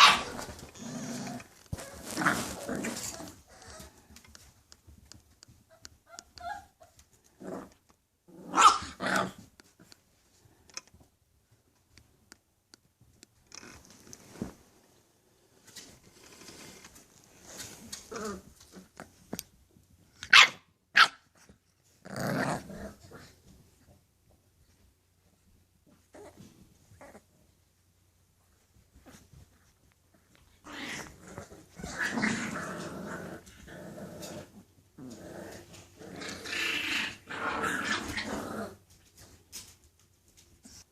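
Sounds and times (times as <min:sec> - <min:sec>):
puppy barking: 0:00.0 - 0:00.5, 0:08.5 - 0:09.4, 0:20.2 - 0:21.2
puppy growling: 0:00.0 - 0:04.2, 0:07.3 - 0:09.8, 0:17.4 - 0:19.5, 0:21.9 - 0:23.6, 0:25.9 - 0:27.4, 0:30.1 - 0:38.9.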